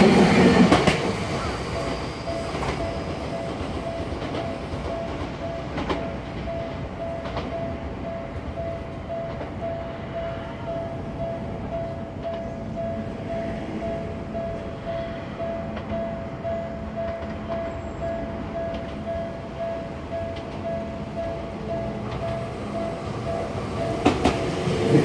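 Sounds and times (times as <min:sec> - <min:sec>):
train passing: 0:00.0 - 0:25.0
train wheels clicking over rail joints: 0:00.4 - 0:07.7, 0:20.3 - 0:25.0
level crossing warning bell: 0:01.4 - 0:25.0.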